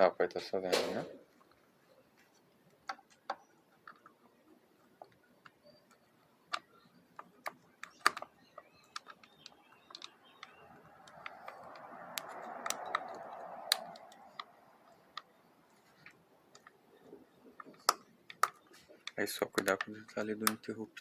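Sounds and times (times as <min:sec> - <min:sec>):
metallic clicks and taps: 0:05.0 - 0:14.5.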